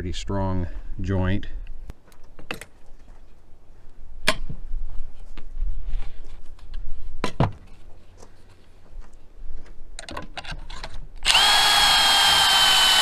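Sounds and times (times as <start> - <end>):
tools and lumber knocking: 11.3 - 13.0.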